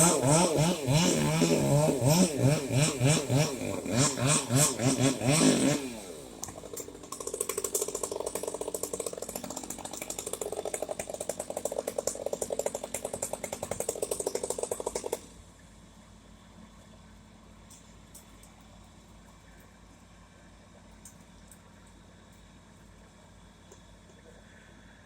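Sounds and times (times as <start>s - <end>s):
chainsaw engine: 0.0s - 15.4s
mechanical ratcheting rattle: 6.4s - 15.3s.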